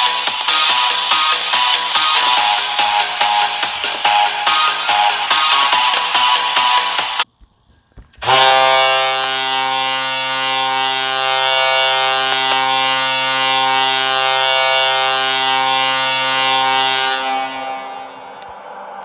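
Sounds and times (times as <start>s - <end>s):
low goal horn blast: 8.2s - 18.9s.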